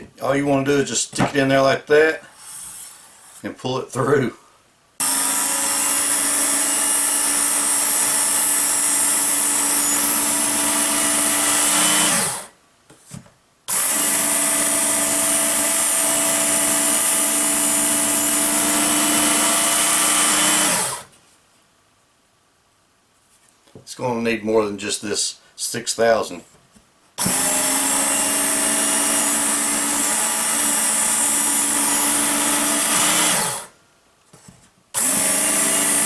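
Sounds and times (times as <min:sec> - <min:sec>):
electric belt sharpener running: 0:05.0 - 0:12.5, 0:13.7 - 0:21.1, 0:27.2 - 0:33.7, 0:35.0 - 0:36.0.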